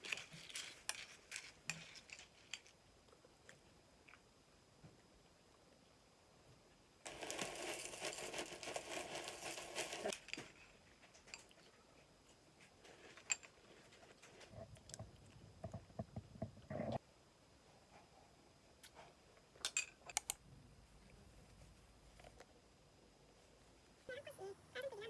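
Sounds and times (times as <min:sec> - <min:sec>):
objects rustling and scraping: 0:00.0 - 0:02.8, 0:07.1 - 0:17.0
small clicks: 0:19.6 - 0:20.4.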